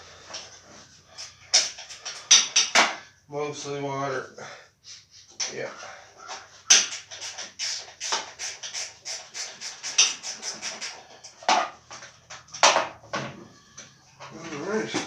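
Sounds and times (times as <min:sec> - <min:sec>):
tool scratching and clicking: 0:06.7 - 0:11.4.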